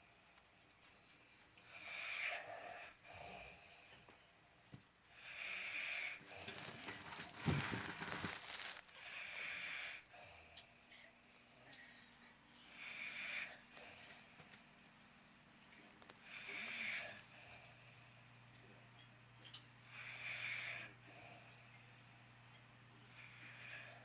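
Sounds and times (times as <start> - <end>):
wheezy breathing: 0.8 - 4.4, 5.1 - 15.0, 16.0 - 18.3, 19.5 - 21.9, 23.0 - 24.0.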